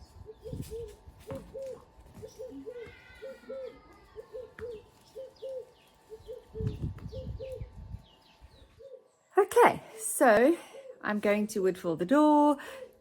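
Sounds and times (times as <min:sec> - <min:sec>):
small birds chirping: 0:00.0 - 0:09.4
dove cooing: 0:00.2 - 0:07.8, 0:08.7 - 0:09.1.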